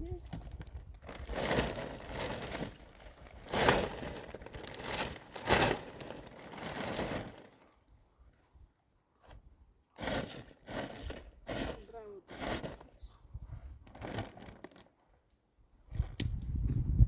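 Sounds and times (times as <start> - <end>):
sheet of material crinkling: 0.4 - 7.7, 13.8 - 15.0.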